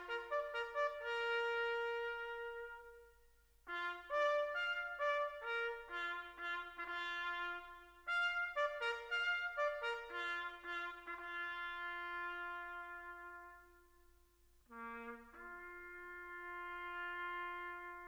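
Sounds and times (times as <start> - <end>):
solo bugle call: 0.0 - 18.0.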